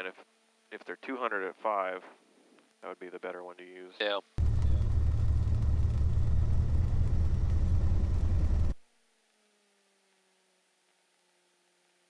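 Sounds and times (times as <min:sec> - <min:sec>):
airplane engine rumbling: 0:04.4 - 0:08.8
faint falling hum: 0:04.4 - 0:08.8.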